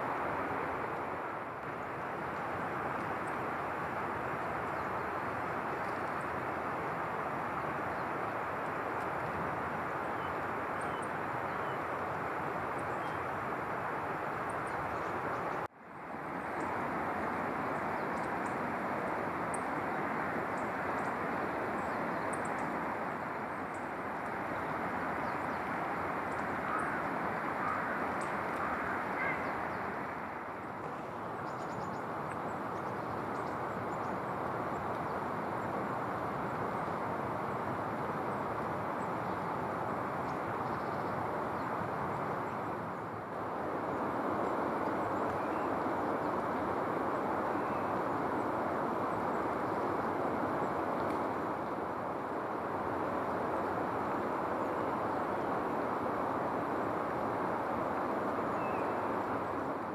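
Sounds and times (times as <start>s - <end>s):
steady rushing outdoor noise: 0.0s - 59.9s
faint bird calls: 26.3s - 30.1s.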